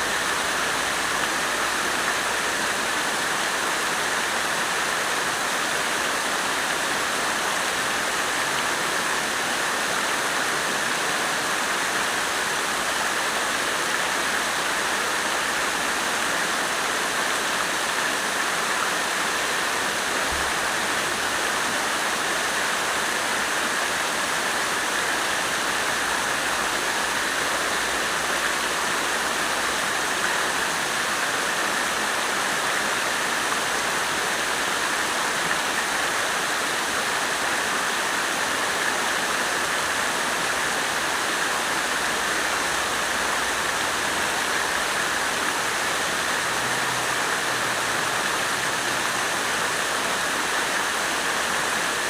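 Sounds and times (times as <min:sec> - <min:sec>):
water fountain splashing: 0:00.0 - 0:52.0.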